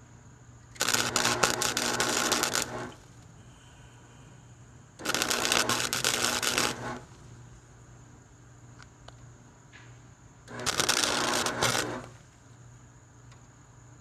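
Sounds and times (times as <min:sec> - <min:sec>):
steady low hum: 0:00.0 - 0:14.0
crackling welding arc: 0:00.6 - 0:03.3, 0:05.0 - 0:07.6, 0:10.4 - 0:12.5.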